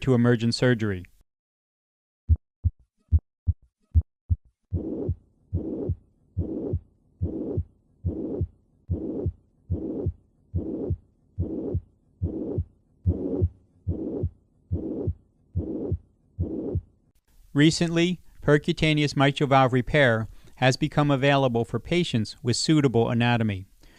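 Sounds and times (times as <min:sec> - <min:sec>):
heartbeat with murmur: 0:04.0 - 0:16.9.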